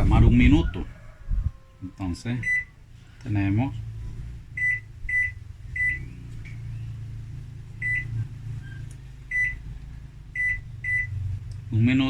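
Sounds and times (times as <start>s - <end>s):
steady low hum: 0.0s - 12.0s
microwave keypad beeping: 2.4s - 2.7s, 4.6s - 6.0s, 9.3s - 9.6s, 10.4s - 11.1s.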